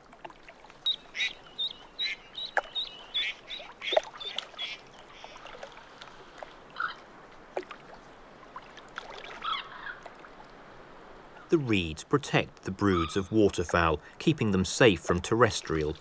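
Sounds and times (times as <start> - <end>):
small bird chirping: 0.8 - 4.8.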